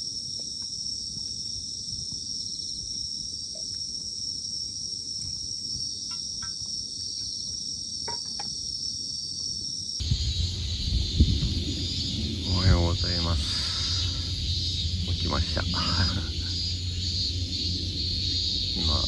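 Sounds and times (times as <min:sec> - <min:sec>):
crickets and night insects chirping: 0:00.0 - 0:19.0
wind noise on microphone: 0:10.0 - 0:19.0.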